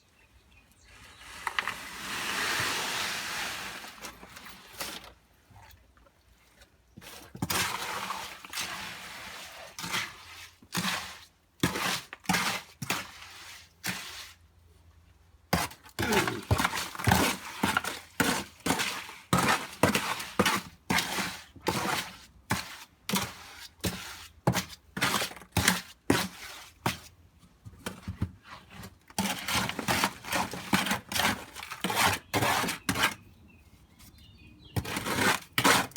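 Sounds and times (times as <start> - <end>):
concrete pouring: 1.0 - 14.4, 15.6 - 27.1, 28.6 - 33.2, 34.8 - 35.9
scraping strikes into concrete: 27.8 - 33.3, 34.7 - 35.9.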